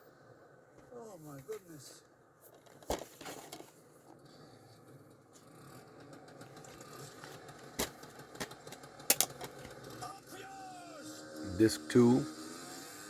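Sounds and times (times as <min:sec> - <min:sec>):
plastic case clicking: 0:07.8 - 0:09.8.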